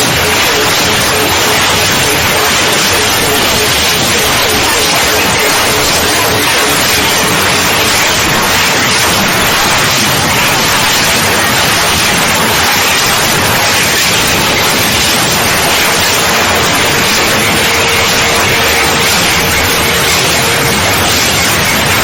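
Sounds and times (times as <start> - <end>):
static hiss: 0.0 - 22.0.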